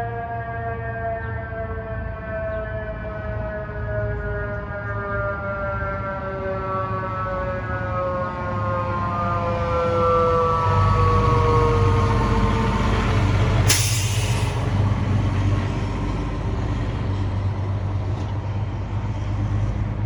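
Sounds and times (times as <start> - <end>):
fire truck siren winding down: 0.0 - 15.7
diesel engine rumble: 9.7 - 20.0
air brakes hiss: 13.7 - 15.3.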